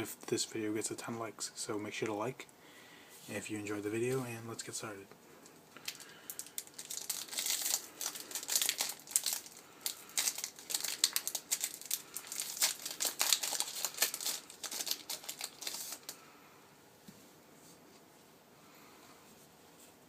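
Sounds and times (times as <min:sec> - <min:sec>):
foil wrapper tearing and crinkling: 0:05.8 - 0:16.2.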